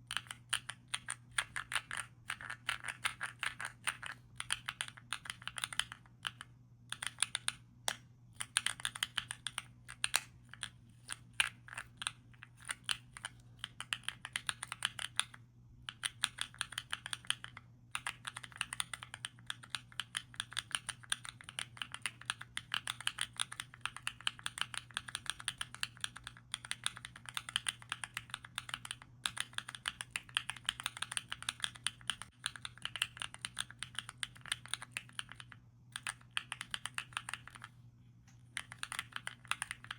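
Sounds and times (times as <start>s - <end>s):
faint low hum: 0.0s - 39.9s.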